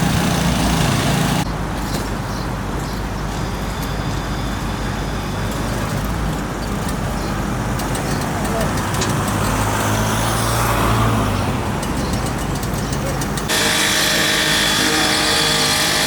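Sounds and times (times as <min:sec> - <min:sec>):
machine engine humming: 0:00.0 - 0:01.5, 0:13.3 - 0:16.0
road construction noise: 0:00.0 - 0:16.0
traffic rumble: 0:00.0 - 0:16.0.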